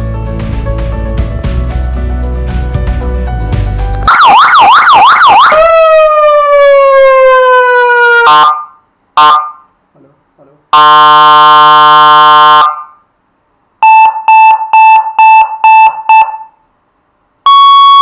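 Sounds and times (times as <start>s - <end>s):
background music: 0.0s - 4.1s
falling siren wail: 4.1s - 9.6s, 10.8s - 13.0s, 17.5s - 18.0s
short siren blast: 4.1s - 9.7s, 10.8s - 13.0s, 17.5s - 18.0s
warbling siren: 4.1s - 9.7s, 10.8s - 13.0s, 17.5s - 18.0s
steady alarm tone: 10.8s - 12.9s, 17.5s - 18.0s.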